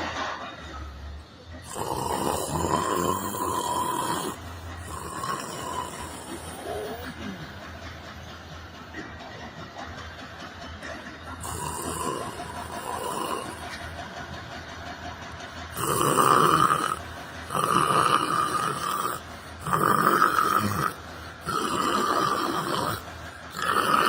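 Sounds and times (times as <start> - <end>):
person snoring: 1.6 - 7.5, 11.4 - 13.8, 15.7 - 24.0.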